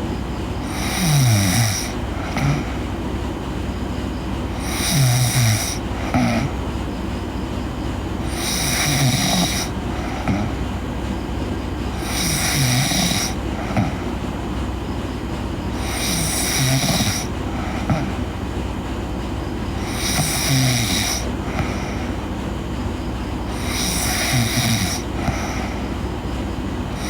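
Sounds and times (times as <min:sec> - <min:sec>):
girl snoring: 0:00.6 - 0:02.9, 0:04.5 - 0:06.6, 0:08.3 - 0:10.6, 0:12.0 - 0:14.1, 0:15.8 - 0:18.2, 0:19.8 - 0:22.2, 0:23.5 - 0:25.9.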